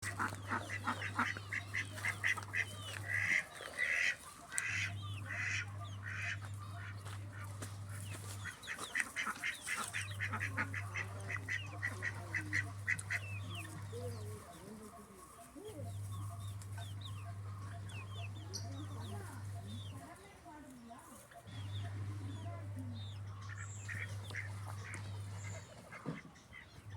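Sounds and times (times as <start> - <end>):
poultry calling: 0.0 - 26.9
low hum: 21.5 - 25.9.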